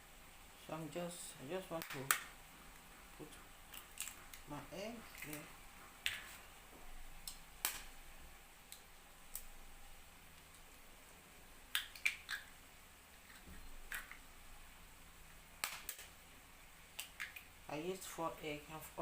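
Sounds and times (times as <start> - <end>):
eggs cracked against bowl rim: 11.7 - 12.6, 13.2 - 14.2.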